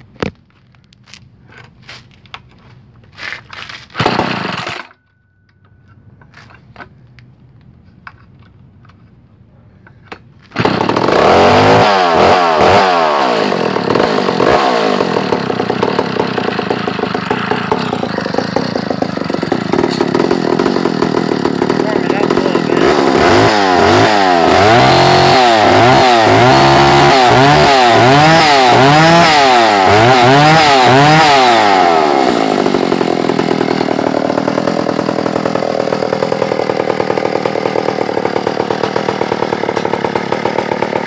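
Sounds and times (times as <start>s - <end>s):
chainsaw engine revving: 3.7s - 4.9s, 10.5s - 41.0s.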